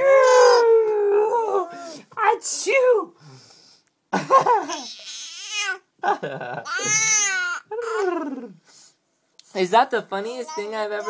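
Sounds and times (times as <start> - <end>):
baby laughing: 4.3 - 5.3, 6.6 - 8.6.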